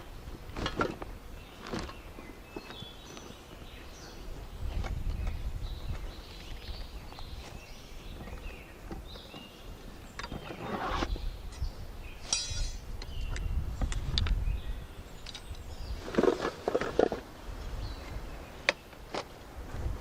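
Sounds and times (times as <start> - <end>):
low wind rumble: 0.0 - 16.2, 19.3 - 20.0
rustling or footsteps: 0.3 - 11.0
rustles and clicks: 0.3 - 14.4, 15.2 - 17.3
bird chirp: 1.2 - 16.6.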